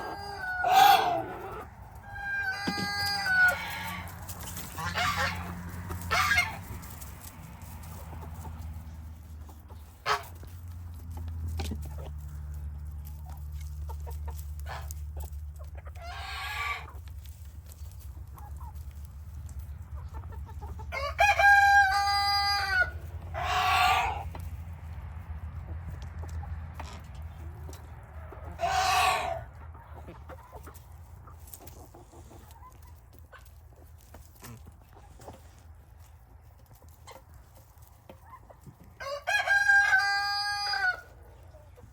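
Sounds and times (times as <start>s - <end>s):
chickens calling: 0.0s - 41.9s
rooster crowing: 21.0s - 24.2s, 39.0s - 41.1s.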